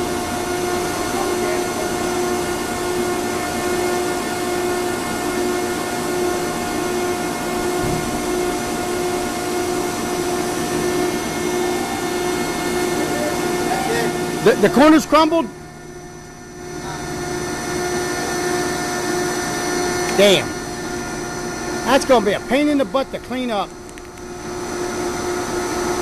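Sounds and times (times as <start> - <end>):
baler machine drone: 0.0 - 26.0
low thump: 7.8 - 8.3.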